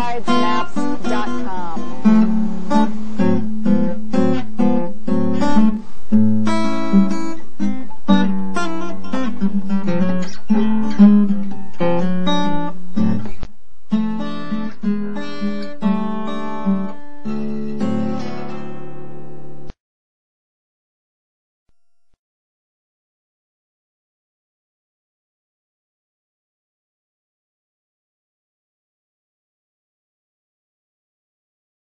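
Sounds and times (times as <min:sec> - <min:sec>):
acoustic guitar picked and strummed: 0:00.0 - 0:19.8.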